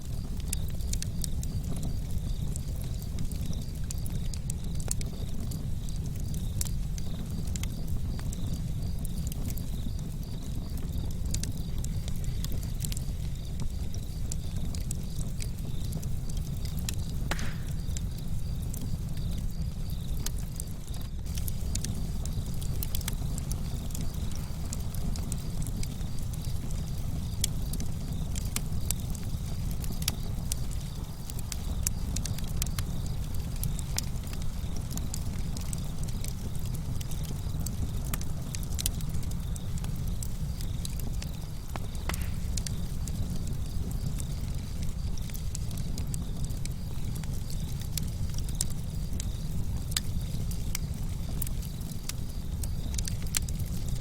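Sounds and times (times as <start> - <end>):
campfire crackling and popping: 0.0 - 54.0.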